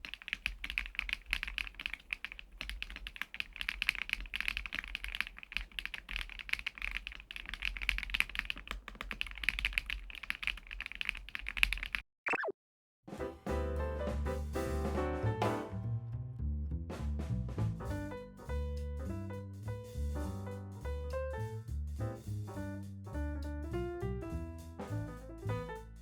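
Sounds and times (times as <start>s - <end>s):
fast mechanical keyboard typing: 0.0s - 12.0s.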